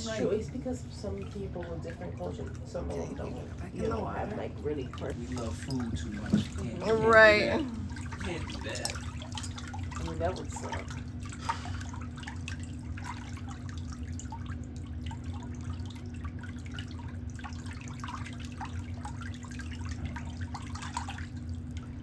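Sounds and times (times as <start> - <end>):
small ticks and drips: 8.1 - 22.0.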